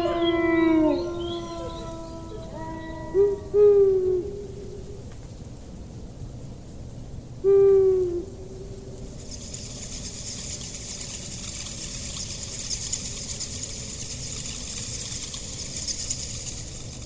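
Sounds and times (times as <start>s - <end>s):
high-pitched insect chorus: 0.0s - 3.6s, 8.4s - 17.0s
low background rumble: 0.0s - 17.0s.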